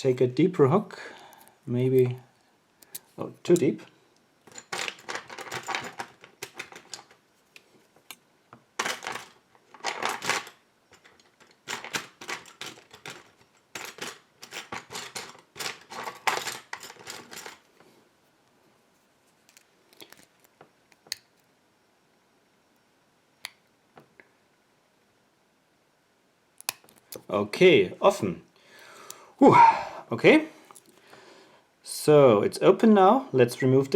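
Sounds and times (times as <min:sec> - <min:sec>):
lock pick metallic clicks: 0:26.6 - 0:27.2.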